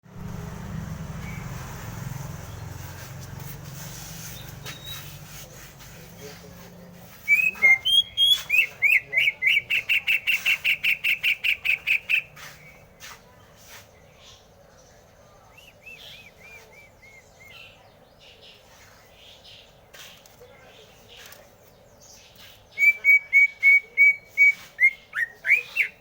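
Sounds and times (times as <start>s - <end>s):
bird sharp chirps: 4.2s - 5.3s, 7.2s - 18.6s, 22.1s - 26.0s
bird singing whistled notes: 4.3s - 5.2s, 7.2s - 12.9s, 15.5s - 17.8s, 22.7s - 26.0s.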